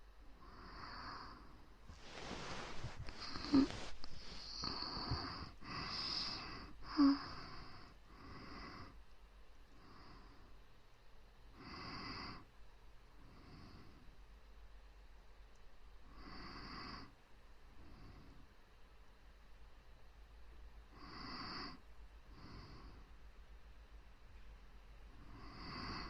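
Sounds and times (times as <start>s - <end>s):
airy breaths into microphone: 0.9s - 8.9s.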